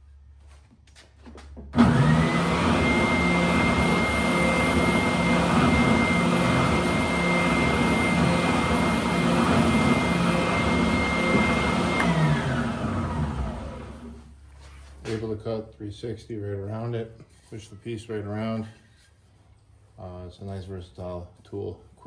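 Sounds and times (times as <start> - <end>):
sander motor whine: 1.8 - 14.2.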